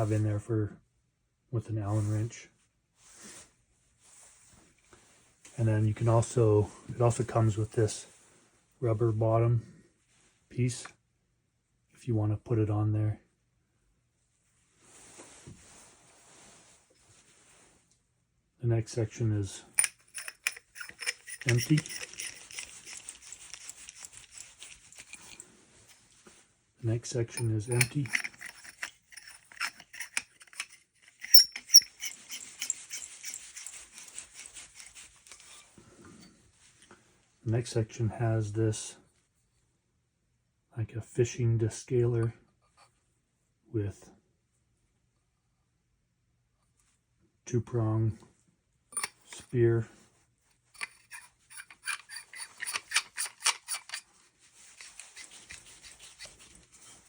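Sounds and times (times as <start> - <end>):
metal sections clinking: 19.7 - 26.0, 27.0 - 35.7, 49.0 - 49.6, 50.8 - 57.0
scratchy clicks of screwing thread: 19.8 - 25.4, 27.4 - 35.7, 49.0 - 49.5, 50.8 - 57.0.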